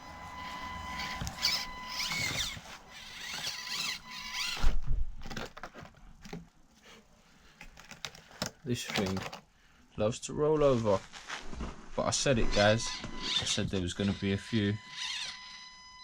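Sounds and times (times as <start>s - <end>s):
small electric motor whining: 0.0s - 5.4s, 12.5s - 16.0s.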